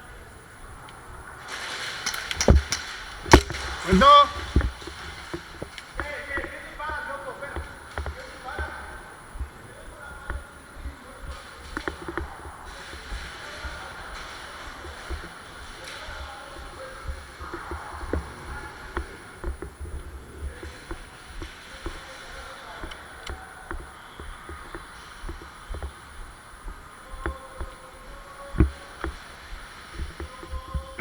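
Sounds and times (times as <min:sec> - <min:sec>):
faint distant voices: 0:00.0 - 0:31.0
sharp crack: 0:00.8 - 0:23.4
clicks knocks and thumps: 0:02.0 - 0:09.6.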